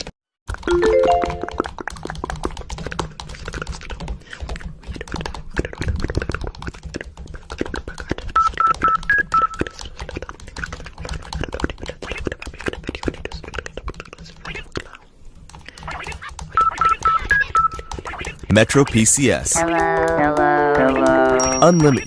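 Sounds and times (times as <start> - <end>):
button clicks and taps: 0.7 - 1.6
phone keypad beeps: 0.7 - 1.6, 8.4 - 9.7, 16.6 - 17.9.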